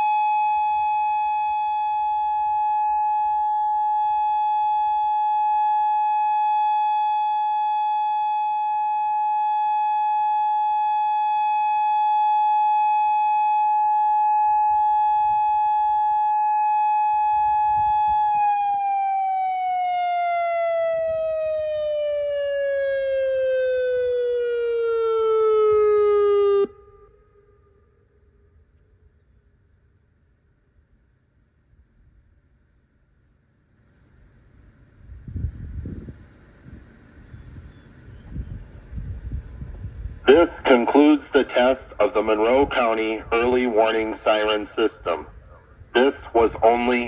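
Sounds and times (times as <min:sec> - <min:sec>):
warning siren winding down: 0:00.0 - 0:27.4.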